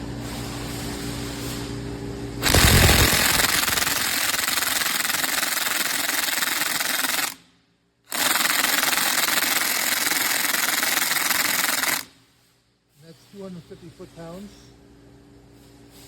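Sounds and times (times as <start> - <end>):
impact wrench hammering: 2.4 - 7.4, 8.1 - 12.1.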